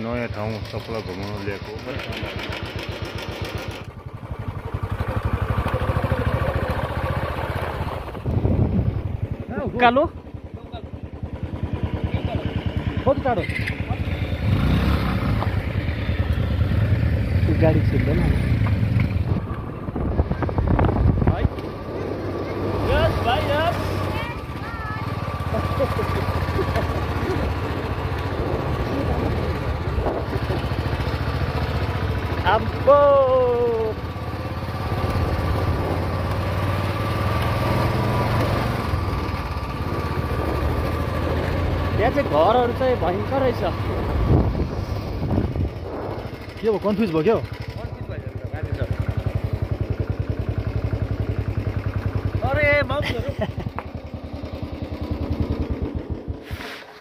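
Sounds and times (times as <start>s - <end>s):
motorcycle engine running: 0.0s - 56.8s.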